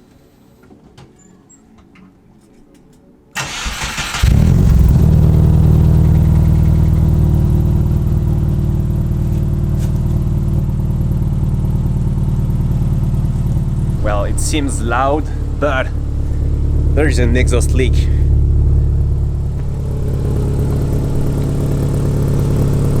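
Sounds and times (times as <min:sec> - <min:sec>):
car starter cranking: 0:03.4 - 0:07.2, 0:12.7 - 0:23.0
car engine idling loudly: 0:04.1 - 0:23.0.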